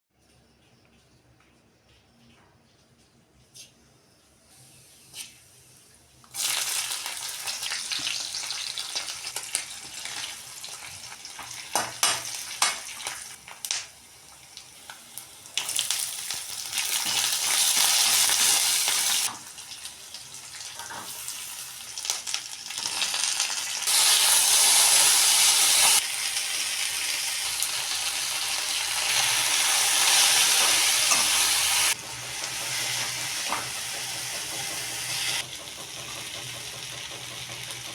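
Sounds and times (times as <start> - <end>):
oil sizzling in a pan: 6.3 - 37.9.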